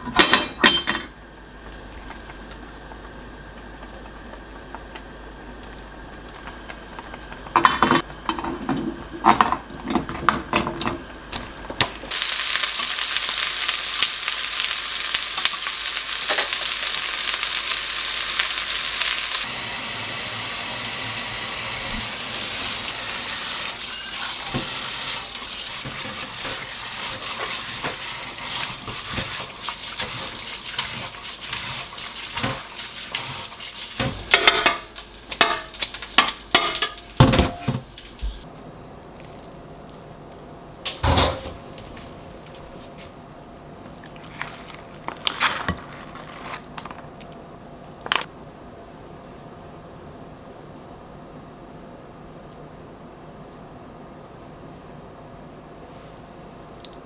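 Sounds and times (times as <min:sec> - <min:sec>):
utensils clinking on cookware: 0:00.1 - 0:01.1, 0:23.5 - 0:38.4
food sizzling in frying pan: 0:12.1 - 0:38.5
utensil scraping pan: 0:23.4 - 0:38.4.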